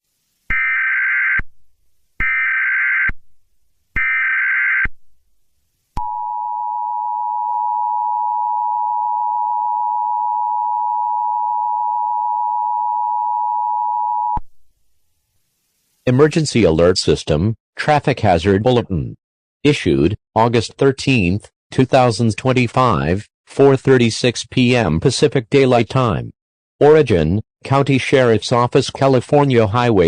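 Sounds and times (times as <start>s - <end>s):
two-tone alarm: 0.5s - 1.4s, 2.2s - 3.2s, 4.0s - 4.9s, 6.0s - 14.4s.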